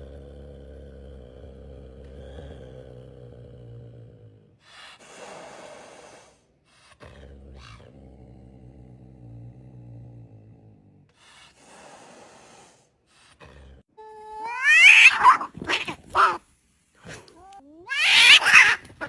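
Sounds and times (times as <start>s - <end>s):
cats yowling and screeching: 14.4s - 16.4s, 17.9s - 19.0s
cat hissing: 14.5s - 16.4s, 17.1s - 19.0s.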